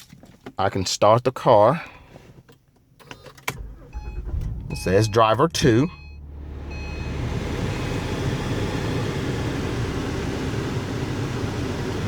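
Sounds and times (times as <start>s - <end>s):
car engine idling: 3.6s - 12.0s.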